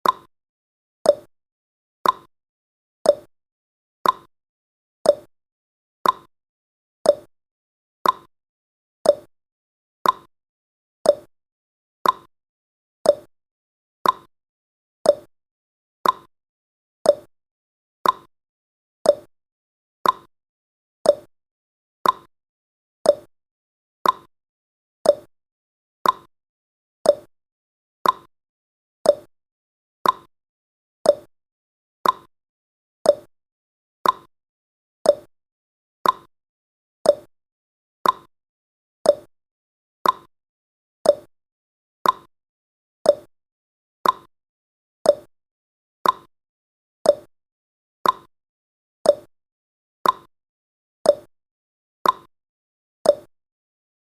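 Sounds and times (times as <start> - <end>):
clock-like tick-tock: 0.0 - 0.3, 1.0 - 1.3, 2.0 - 2.3, 3.0 - 3.3, 4.0 - 4.3, 5.0 - 5.3, 6.0 - 6.3, 7.0 - 7.3, 8.0 - 8.3, 9.0 - 9.3, 10.0 - 10.3, 11.0 - 11.3, 12.0 - 12.3, 13.0 - 13.3, 14.0 - 14.3, 15.0 - 15.3, 16.0 - 16.3, 17.0 - 17.3, 18.0 - 18.3, 19.0 - 19.3, 20.0 - 20.3, 21.0 - 21.3, 22.0 - 22.3, 23.0 - 23.3, 24.0 - 24.3, 25.0 - 25.3, 26.0 - 26.3, 27.0 - 27.3, 28.0 - 28.3, 29.0 - 29.3, 30.0 - 30.3, 31.0 - 31.3, 32.0 - 32.3, 33.0 - 33.3, 34.0 - 34.3, 35.0 - 35.3, 36.0 - 36.3, 37.0 - 37.3, 38.0 - 38.3, 39.0 - 39.4, 40.0 - 40.3, 41.0 - 41.4, 42.0 - 42.3, 43.0 - 43.3, 44.0 - 44.3, 45.0 - 45.4, 46.0 - 46.3, 47.0 - 47.4, 48.0 - 48.3, 49.0 - 49.4, 50.0 - 50.3, 51.0 - 51.3, 52.0 - 52.3, 53.0 - 53.4.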